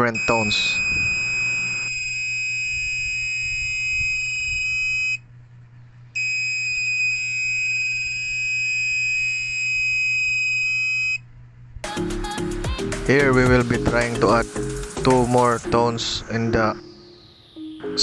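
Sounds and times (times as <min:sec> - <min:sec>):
electronic buzzer beeping tones: 0:00.0 - 0:05.2, 0:06.2 - 0:11.2.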